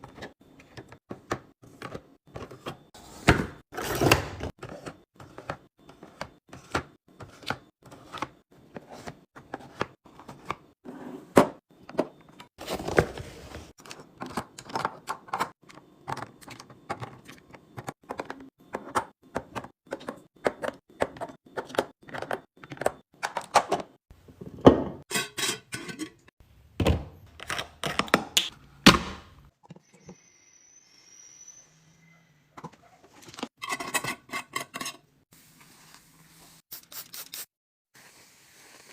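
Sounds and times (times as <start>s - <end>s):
food containers clicking and thunking: 13.8s - 29.8s.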